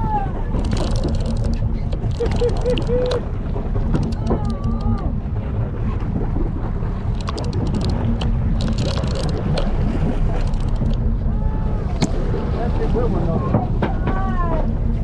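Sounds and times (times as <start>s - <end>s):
boat noise: 0.0s - 15.0s
wind rumble on microphone: 0.0s - 15.0s
sharp clicks and knocks: 0.6s - 5.1s, 7.1s - 11.0s, 12.0s - 12.3s.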